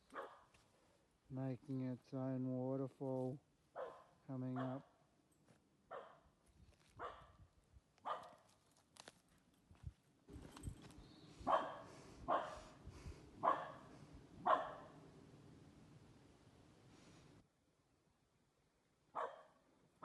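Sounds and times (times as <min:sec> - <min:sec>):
dog barking: 0:00.1 - 0:00.5, 0:03.8 - 0:04.9, 0:05.9 - 0:06.3, 0:07.0 - 0:07.4, 0:08.1 - 0:08.4, 0:11.4 - 0:12.8, 0:13.4 - 0:15.0, 0:19.2 - 0:19.6.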